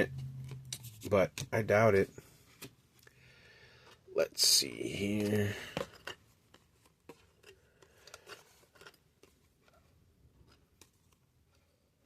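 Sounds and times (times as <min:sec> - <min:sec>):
trading cards clicking and rustling: 0:04.6 - 0:11.7.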